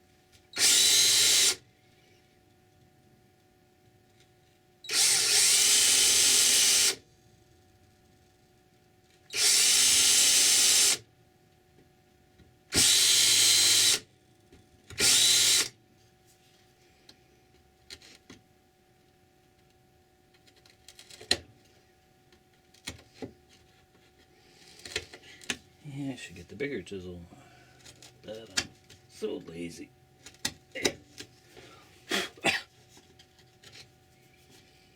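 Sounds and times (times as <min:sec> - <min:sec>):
electric drill running: 0:00.6 - 0:01.6, 0:04.9 - 0:07.0, 0:09.3 - 0:11.0, 0:12.7 - 0:14.0, 0:15.0 - 0:15.7.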